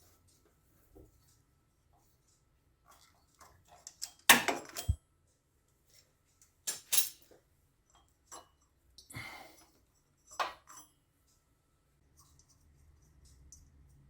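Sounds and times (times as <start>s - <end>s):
metal tools clinking and clattering: 3.4s - 5.0s, 6.7s - 7.3s, 10.2s - 11.0s.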